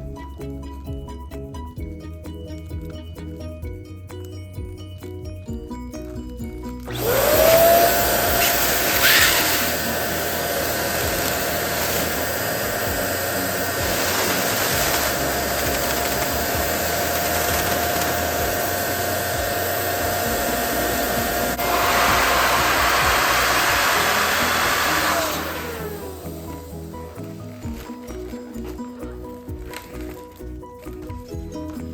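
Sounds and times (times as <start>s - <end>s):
balloon pump motor hum: 6.4s - 28.5s.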